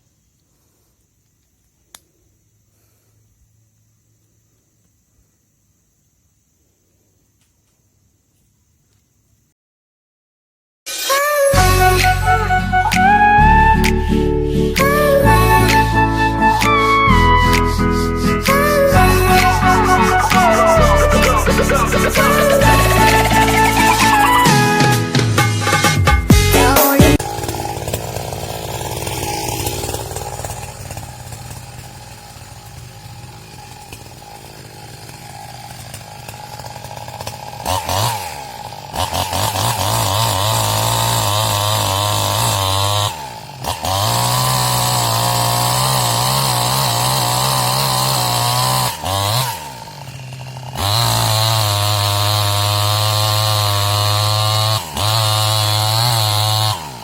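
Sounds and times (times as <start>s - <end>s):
chainsaw at full throttle: 10.9s - 25.4s, 26.3s - 57.0s.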